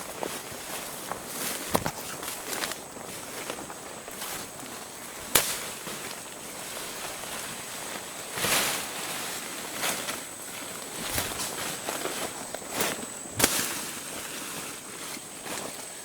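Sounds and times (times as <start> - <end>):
footsteps on dry leaves: 0.0 - 16.0
twigs snapping: 5.2 - 5.8.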